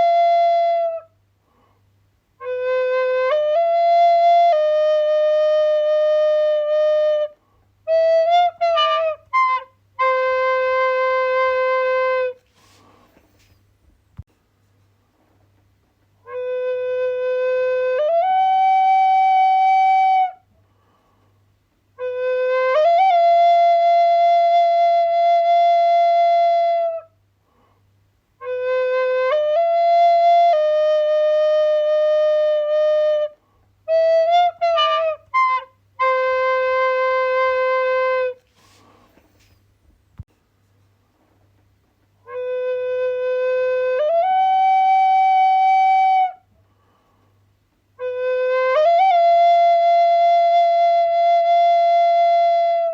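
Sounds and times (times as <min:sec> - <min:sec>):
solo flute playing: 0:00.0 - 0:01.2, 0:02.4 - 0:13.6, 0:16.2 - 0:20.4, 0:22.0 - 0:27.2, 0:28.4 - 0:39.5, 0:42.2 - 0:46.5, 0:48.0 - 0:52.9.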